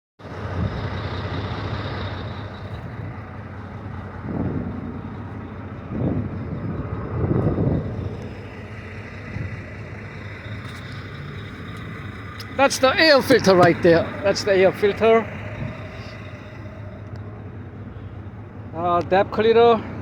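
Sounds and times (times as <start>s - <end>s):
motor vehicle engines rumbling: 0.2s - 20.0s.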